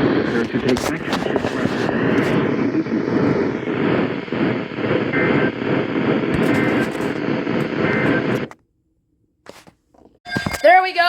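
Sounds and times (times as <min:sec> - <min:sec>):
radio static: 0:00.0 - 0:08.6
two-tone data chirps: 0:05.0 - 0:08.5.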